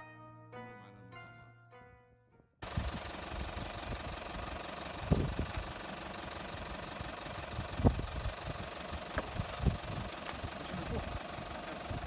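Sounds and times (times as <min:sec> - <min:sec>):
motor idling with knocking rumble: 0:02.6 - 0:12.0.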